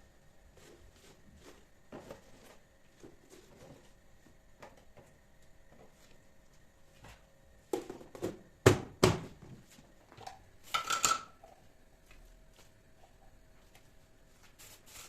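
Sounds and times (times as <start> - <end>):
kitchenware clacking: 10.8 - 11.4.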